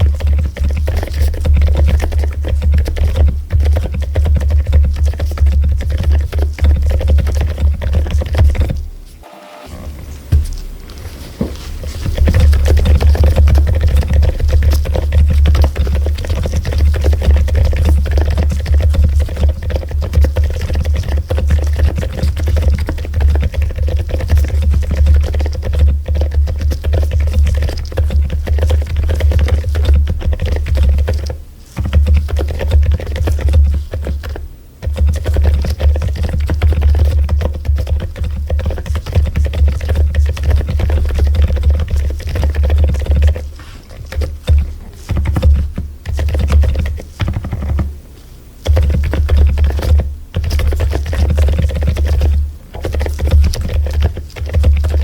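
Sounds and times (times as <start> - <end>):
mechanical keyboard typing: 12.1 - 47.9.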